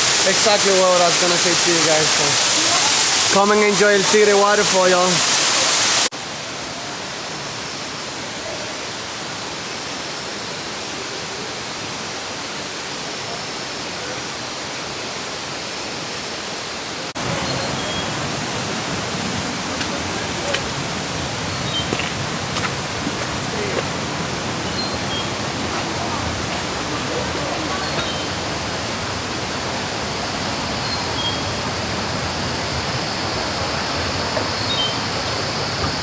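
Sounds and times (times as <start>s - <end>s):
waterfall rushing: 0.0s - 6.1s, 17.0s - 36.0s.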